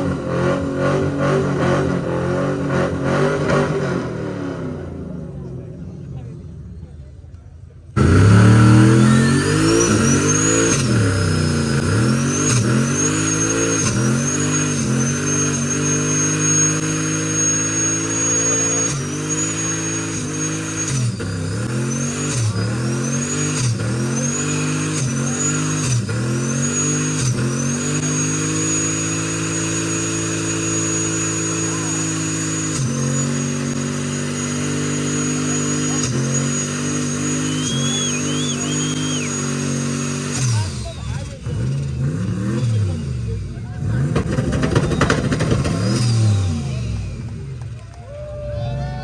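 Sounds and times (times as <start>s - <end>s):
car engine revving: 0.0s - 49.0s.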